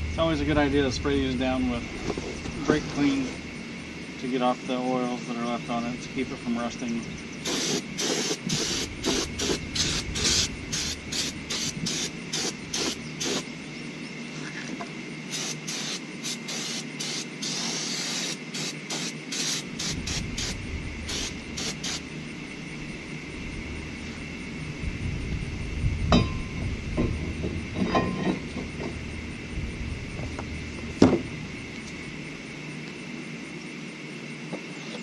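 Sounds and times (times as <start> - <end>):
aerosol spray hissing: 7.4 - 13.4, 15.3 - 22.1.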